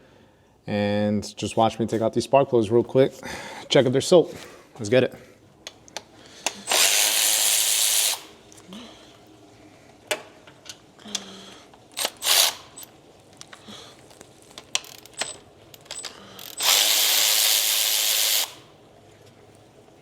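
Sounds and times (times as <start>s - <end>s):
tools clicking and knocking: 14.6s - 16.8s.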